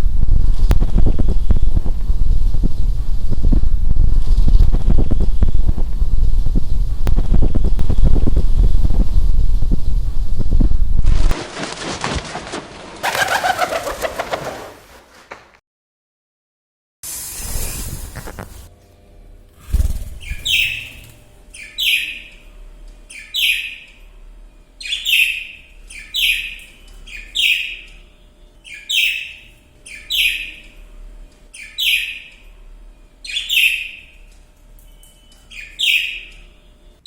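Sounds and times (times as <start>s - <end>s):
bird calling: 13.0s - 14.7s, 20.2s - 22.4s, 23.1s - 23.9s, 24.8s - 30.8s, 31.6s - 32.4s, 33.2s - 34.3s, 35.4s - 36.6s.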